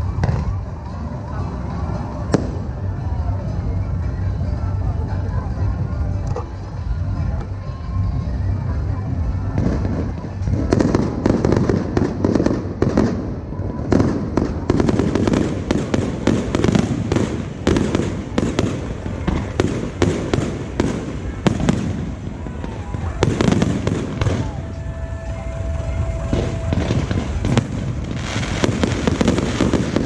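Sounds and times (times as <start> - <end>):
low rumble: 0.0 - 20.0
fireworks bangs and crackles: 0.0 - 30.0
music: 0.0 - 30.0.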